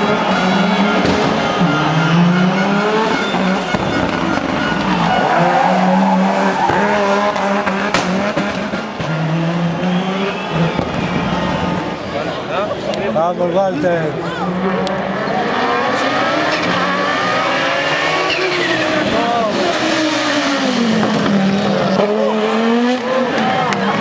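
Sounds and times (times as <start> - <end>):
rally car engine revving: 0.0 - 24.0.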